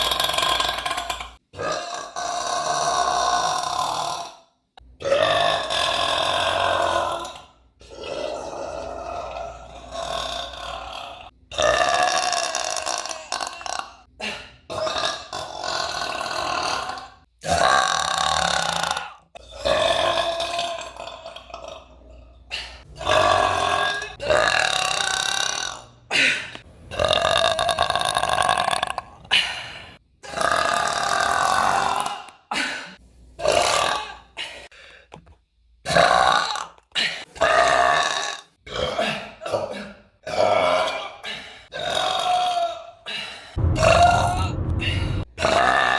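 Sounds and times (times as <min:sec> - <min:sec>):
person burping: 0:00.0 - 0:04.4, 0:05.0 - 0:25.8, 0:35.9 - 0:42.8.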